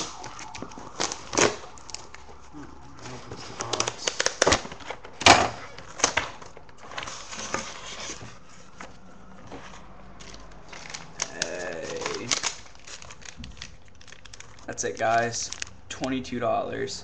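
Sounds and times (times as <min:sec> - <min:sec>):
cardboard packaging clicks and knocks: 0:00.0 - 0:02.4, 0:03.2 - 0:14.4
packing material rustling: 0:00.0 - 0:16.2.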